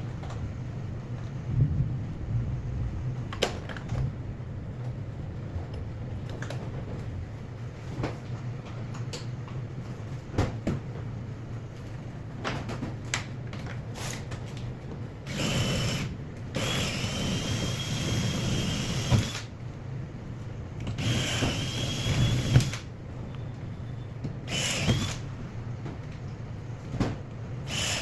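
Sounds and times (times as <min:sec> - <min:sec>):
power drill whining: 0:15.3 - 0:19.5, 0:21.0 - 0:22.8, 0:24.5 - 0:25.2, 0:27.7 - 0:28.0.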